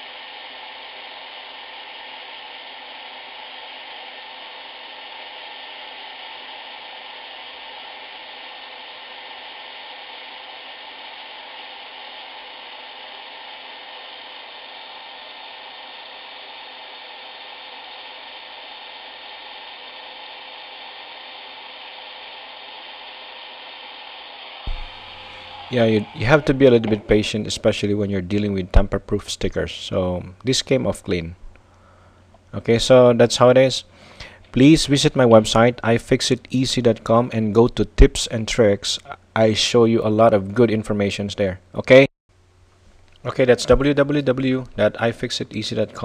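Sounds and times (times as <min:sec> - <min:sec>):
hot-air blower running: 0:00.0 - 0:28.5.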